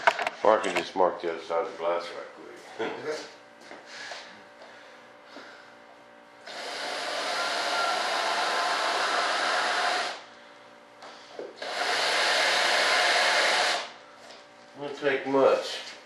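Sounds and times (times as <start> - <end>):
electric drill drilling: 6.4 - 10.2, 11.6 - 14.0.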